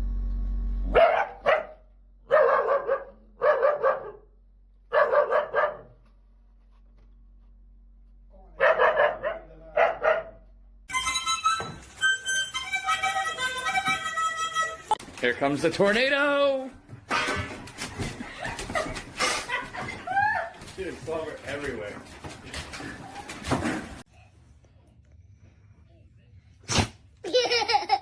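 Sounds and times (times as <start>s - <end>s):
dog barking: 0.9s - 6.0s, 8.6s - 10.5s
music with reedy notes: 10.9s - 15.0s.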